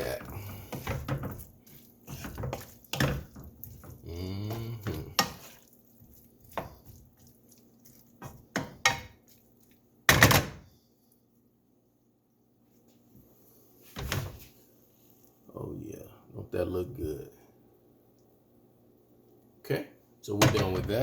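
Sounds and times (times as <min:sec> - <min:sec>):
utensil scraping a skillet: 0:00.0 - 0:09.8.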